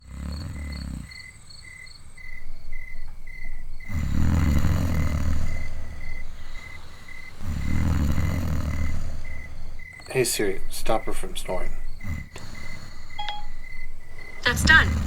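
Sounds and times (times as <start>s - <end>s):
woman snoring: 0.0s - 1.4s, 3.8s - 9.9s, 12.0s - 15.0s
crickets chirping: 0.0s - 15.0s.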